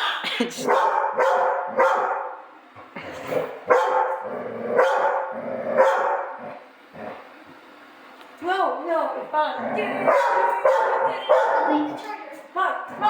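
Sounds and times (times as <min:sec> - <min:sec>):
dog barking: 0:00.6 - 0:02.4, 0:03.7 - 0:04.2, 0:04.8 - 0:06.4, 0:10.0 - 0:11.9.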